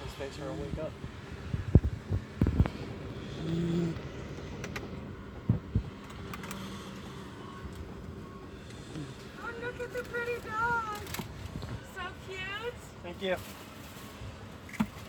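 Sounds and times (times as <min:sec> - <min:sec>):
puppy snoring: 0:03.2 - 0:04.2.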